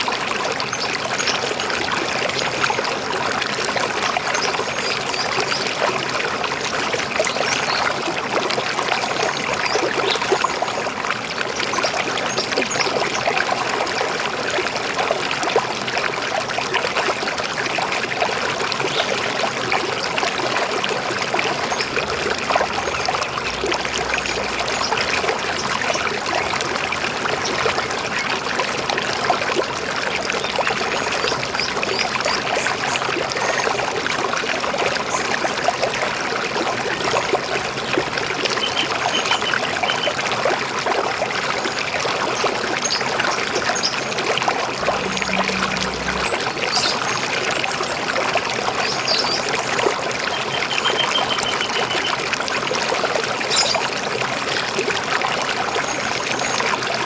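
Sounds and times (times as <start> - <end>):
river water flowing: 0.0 - 57.0
faint bird chirps: 50.3 - 52.1.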